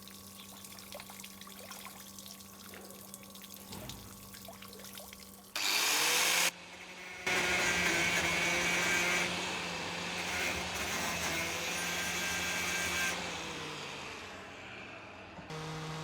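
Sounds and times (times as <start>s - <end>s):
power tool motor humming: 5.6s - 14.5s.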